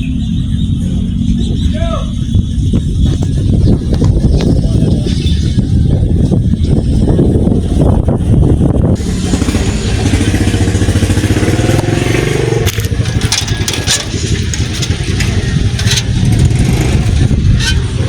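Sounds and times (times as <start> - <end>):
vehicle engine revving: 0.0 - 18.0
clatter: 10.2 - 18.0.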